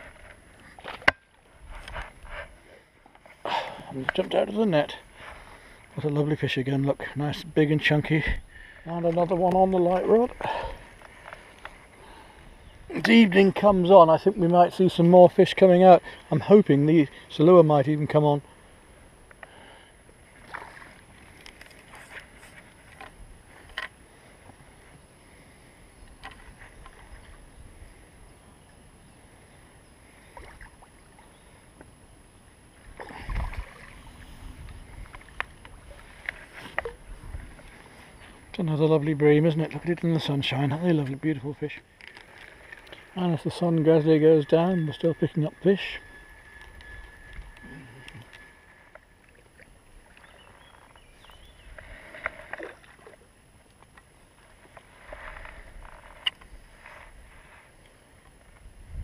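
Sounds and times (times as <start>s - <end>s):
water splashing and sloshing: 0.0s - 6.3s, 7.8s - 16.6s, 20.2s - 25.5s, 30.0s - 31.6s, 32.7s - 57.6s
water splashing: 20.4s - 22.3s, 32.8s - 38.0s.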